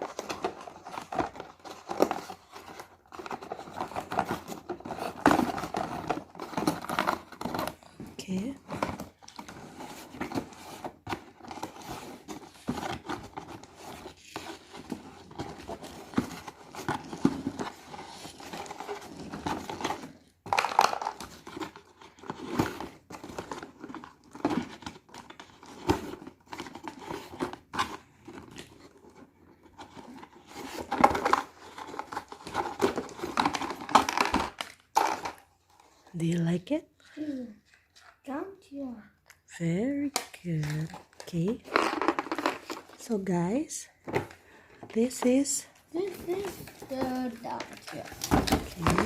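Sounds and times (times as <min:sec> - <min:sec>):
packaging crinkling and tearing: 0:45.9 - 0:49.0.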